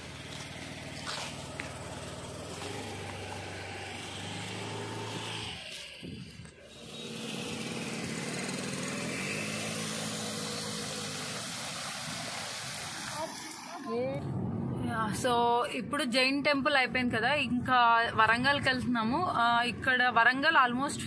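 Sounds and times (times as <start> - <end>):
vehicle engine running: 0.0 - 12.4.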